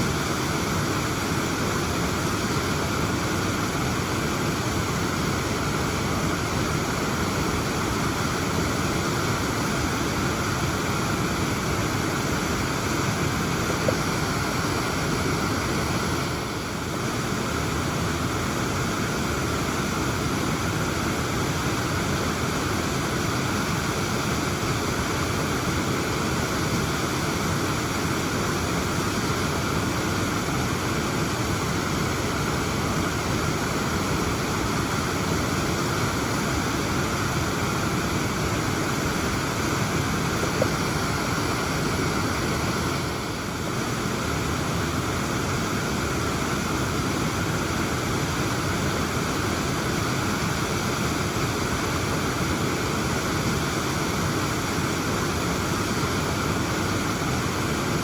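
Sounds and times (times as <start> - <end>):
waterfall rushing: 0.0 - 58.0.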